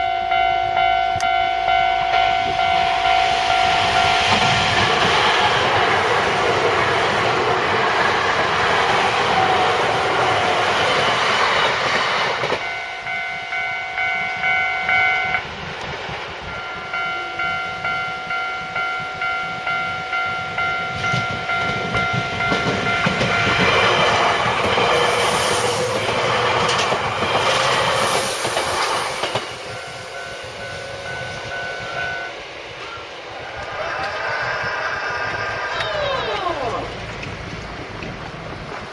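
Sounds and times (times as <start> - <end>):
crossing warning bell dinging: 0.0 - 38.1
train wheels clattering: 2.0 - 14.5, 20.8 - 34.2.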